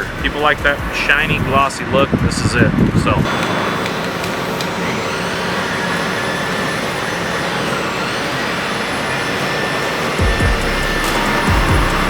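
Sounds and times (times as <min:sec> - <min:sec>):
spray hissing: 0:03.0 - 0:12.0.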